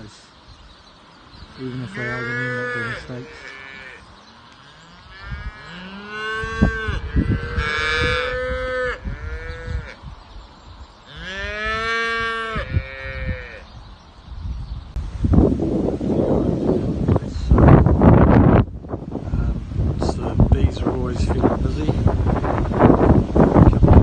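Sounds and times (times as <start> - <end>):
calves mooing: 1.6 - 4.0, 4.6 - 10.0, 11.1 - 13.7.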